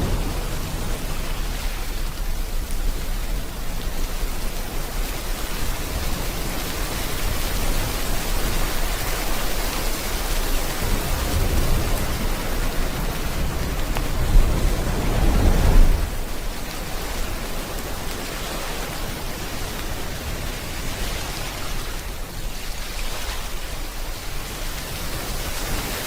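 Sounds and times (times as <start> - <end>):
rain falling: 0.0 - 26.0
sea waves: 0.0 - 26.0.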